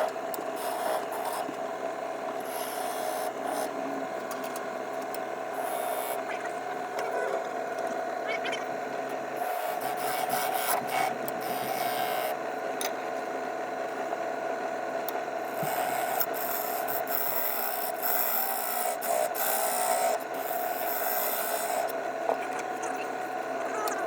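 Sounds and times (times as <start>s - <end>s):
wood lathe humming: 0.0s - 4.2s, 5.3s - 6.2s, 9.0s - 12.4s, 15.4s - 22.2s
turning tool scraping wood: 9.4s - 12.3s, 15.5s - 21.9s.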